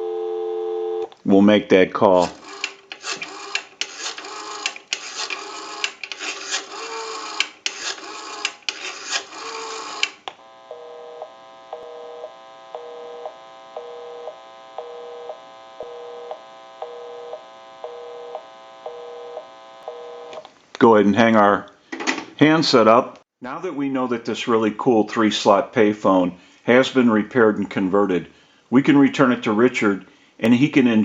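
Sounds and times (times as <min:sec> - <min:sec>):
rotary dial clicks: 0:02.2 - 0:10.4
telephone line hiss: 0:09.3 - 0:20.4.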